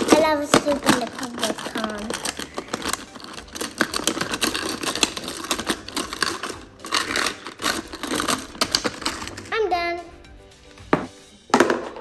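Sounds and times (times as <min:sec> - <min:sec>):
plastic toy pieces clattering: 0:00.0 - 0:09.6.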